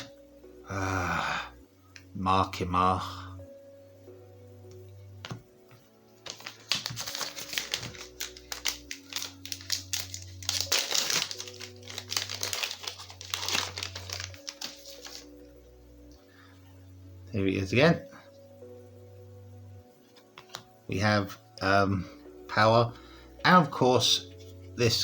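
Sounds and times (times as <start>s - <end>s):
background music: 0.0s - 25.0s
wrapper crinkling: 6.2s - 15.4s.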